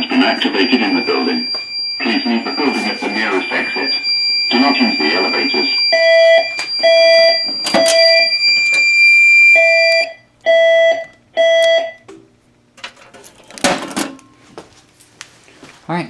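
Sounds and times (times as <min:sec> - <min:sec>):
steady high-pitched alarm tone: 0:00.0 - 0:10.2
fire alarm horn beeps: 0:00.0 - 0:12.0
clicks: 0:05.6 - 0:09.0.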